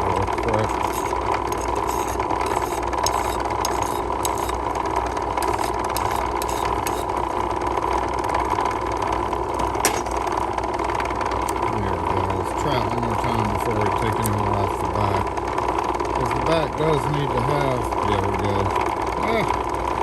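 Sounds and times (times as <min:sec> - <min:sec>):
shop machine humming: 0:00.0 - 0:19.7
key filing scrapes and clicks: 0:00.5 - 0:04.6, 0:05.4 - 0:07.3.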